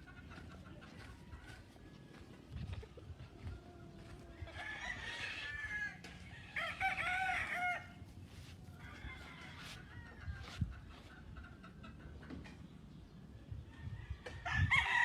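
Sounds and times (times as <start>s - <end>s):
roosters crowing: 3.4s - 11.2s, 13.7s - 15.0s.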